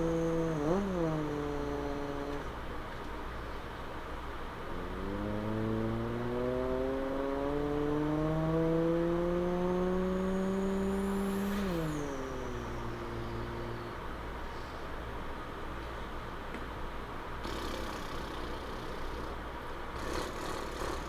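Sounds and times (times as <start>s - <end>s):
person imitating car engine revving: 0.0s - 2.7s, 4.6s - 14.1s, 17.4s - 19.4s, 20.0s - 21.0s.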